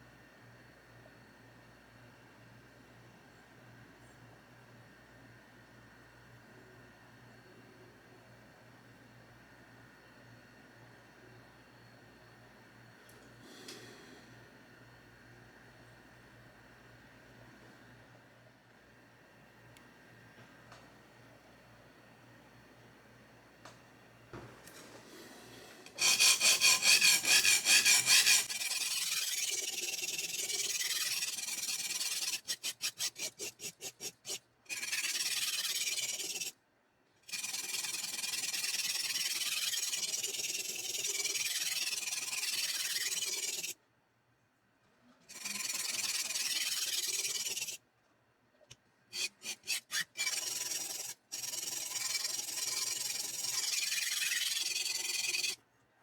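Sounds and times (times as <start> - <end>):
knife scraping on sharpening stone: 25.9 - 34.1.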